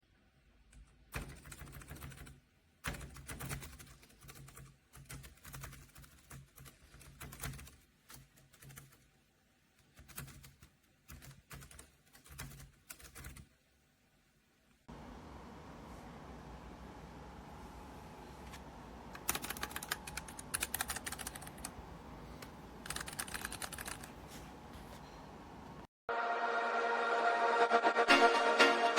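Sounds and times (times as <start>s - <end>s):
mechanical keyboard typing: 1.1s - 9.0s, 9.8s - 13.4s, 19.2s - 21.8s, 22.4s - 24.2s.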